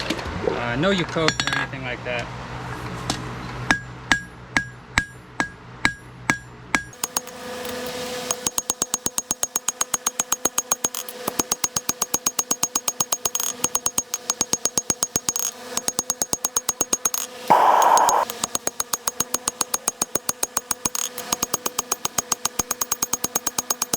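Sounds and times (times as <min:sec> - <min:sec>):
hammer blows on hot steel: 0:17.5 - 0:18.3
steady hum: 0:17.5 - 0:18.3.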